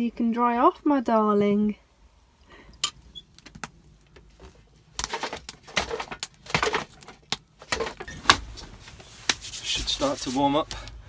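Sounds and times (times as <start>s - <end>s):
dry wood knocking and rustling: 2.9s - 11.0s.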